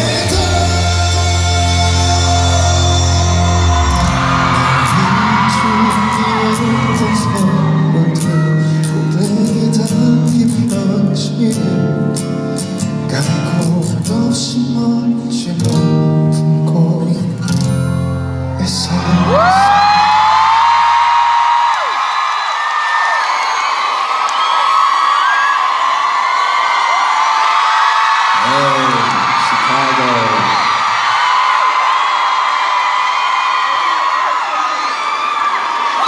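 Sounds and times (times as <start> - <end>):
man singing: 0.0 - 17.5, 18.6 - 20.4
acoustic guitar: 0.0 - 20.7.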